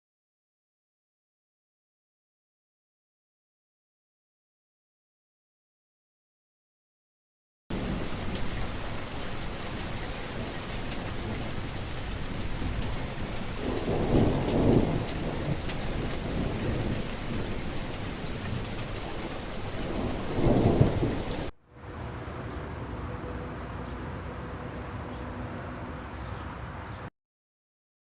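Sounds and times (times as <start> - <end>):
low rolls of thunder: 7.7 - 21.5
steady rain: 7.7 - 24.2.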